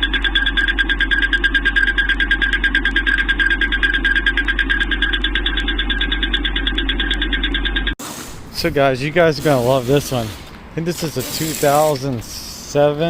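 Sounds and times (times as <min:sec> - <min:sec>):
rapid steady engine knocking: 0:00.0 - 0:08.0
engine running: 0:00.0 - 0:12.7.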